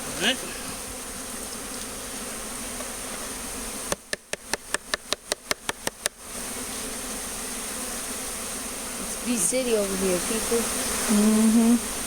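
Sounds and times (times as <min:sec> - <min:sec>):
honeybees buzzing: 0:00.0 - 0:12.0
sharp clicks or taps: 0:03.9 - 0:06.2.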